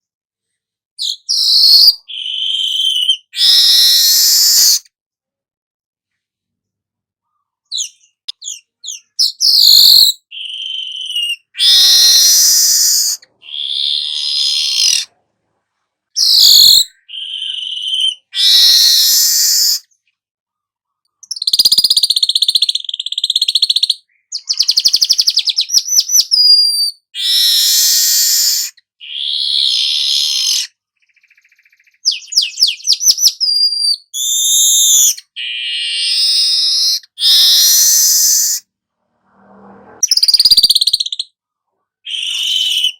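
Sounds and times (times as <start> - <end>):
bird buzzy chattering song: 21.2 - 38.6, 40.0 - 41.3, 42.1 - 42.9.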